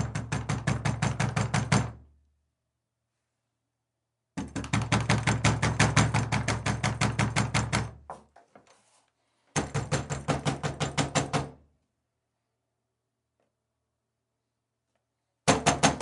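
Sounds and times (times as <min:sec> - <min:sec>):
rapid pounding on a door: 0:00.0 - 0:02.1, 0:04.4 - 0:08.3, 0:09.6 - 0:11.6, 0:15.4 - 0:16.0.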